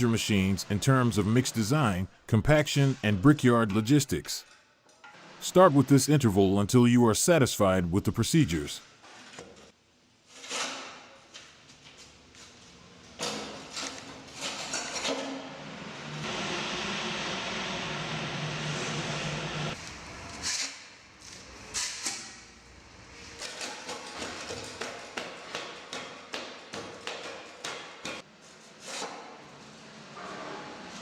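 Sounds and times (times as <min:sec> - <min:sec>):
machine humming: 0:15.9 - 0:19.8.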